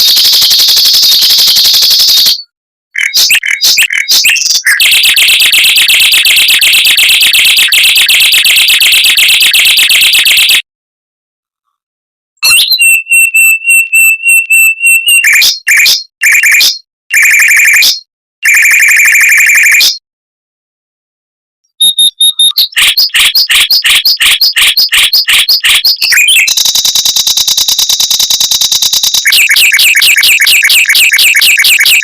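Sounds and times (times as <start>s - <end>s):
mockingbird singing: 12.4s - 16.0s, 21.8s - 26.6s.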